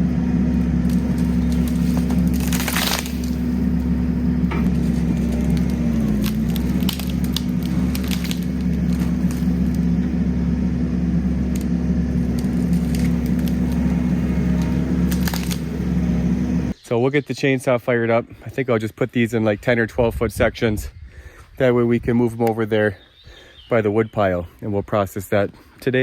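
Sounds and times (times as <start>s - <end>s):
diesel engine running under load: 0.0s - 16.8s
wood cracking and snapping: 0.1s - 16.8s.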